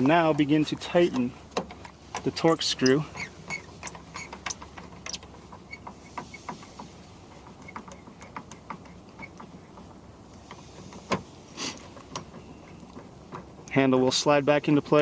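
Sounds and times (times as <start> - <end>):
wrench metallic clicks: 0.4 - 5.9.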